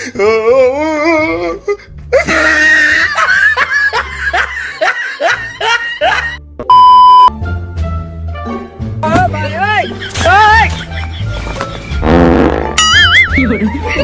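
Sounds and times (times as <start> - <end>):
background music: 0.0 - 14.0
person laughing: 2.2 - 6.4, 9.8 - 11.6, 13.1 - 14.0
loud steady beep: 6.7 - 7.3.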